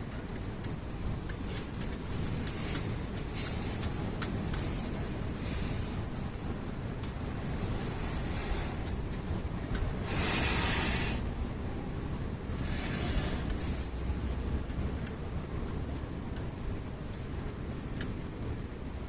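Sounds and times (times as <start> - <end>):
wind rumbling on microphone: 0.0 - 19.0
rasping rubbing noise: 7.6 - 8.9.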